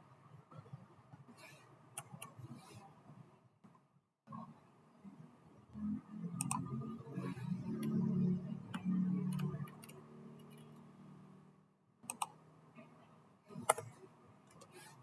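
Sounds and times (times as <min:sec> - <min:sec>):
computer mouse clicks: 0:02.0 - 0:02.6, 0:06.4 - 0:06.7, 0:08.7 - 0:10.8, 0:12.0 - 0:12.4, 0:13.5 - 0:15.0
low hum: 0:04.3 - 0:11.8.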